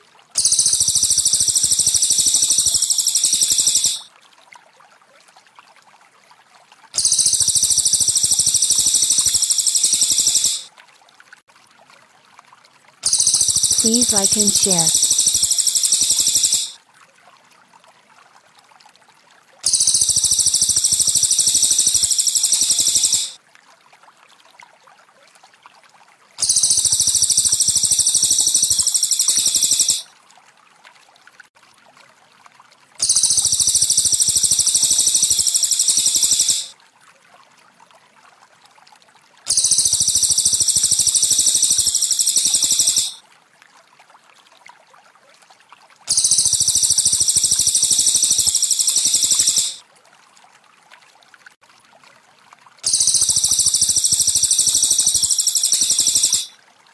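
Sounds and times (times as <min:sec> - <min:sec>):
faint trickling water: 0:00.0 - 0:56.9
high-pitched bird chirping: 0:00.4 - 0:04.1, 0:07.0 - 0:10.7, 0:13.0 - 0:16.8, 0:19.7 - 0:23.4, 0:26.4 - 0:30.0, 0:33.0 - 0:36.7, 0:39.5 - 0:43.2, 0:46.1 - 0:49.8, 0:52.8 - 0:56.5.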